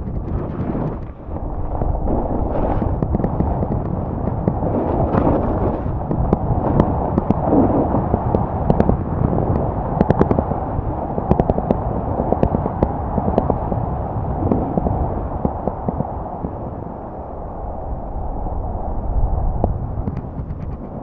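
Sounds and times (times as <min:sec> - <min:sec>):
snowboard scraping on snow: 0:00.4 - 0:03.8, 0:04.6 - 0:06.0.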